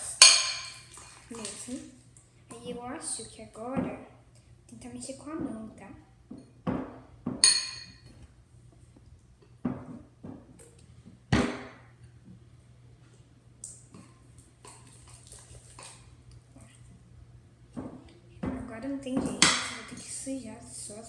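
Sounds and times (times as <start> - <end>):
steady low hum: 0.0 - 21.0
utensil clinking on bowl: 0.2 - 1.5, 7.4 - 8.1.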